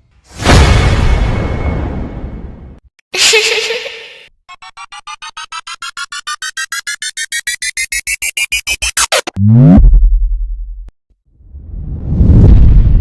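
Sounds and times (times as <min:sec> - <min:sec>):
rising synthesizer beeps: 0:04.5 - 0:09.9.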